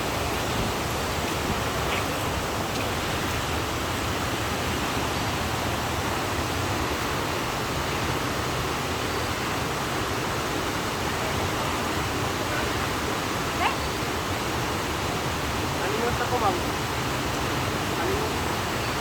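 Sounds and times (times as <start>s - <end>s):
creek water rushing: 0.0s - 19.0s.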